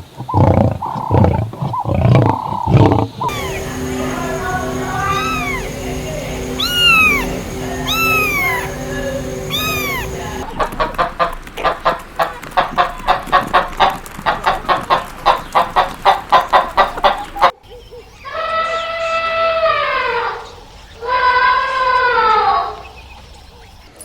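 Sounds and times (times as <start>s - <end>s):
chicken clucking rapidly: 0.3s - 17.6s
high rising and falling calls: 3.2s - 10.5s.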